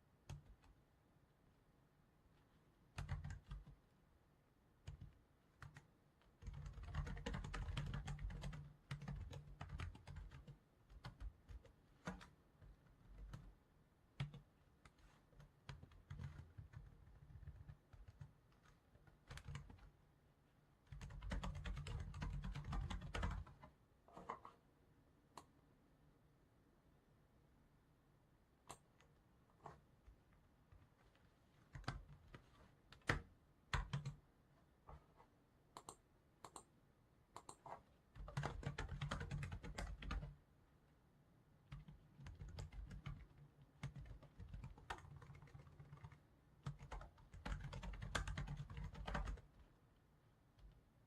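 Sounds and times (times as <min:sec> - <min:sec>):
computer keyboard typing: 0:03.0 - 0:03.8, 0:04.9 - 0:12.4, 0:14.2 - 0:19.9, 0:20.9 - 0:23.6, 0:31.7 - 0:34.2, 0:38.2 - 0:40.4, 0:41.7 - 0:49.5.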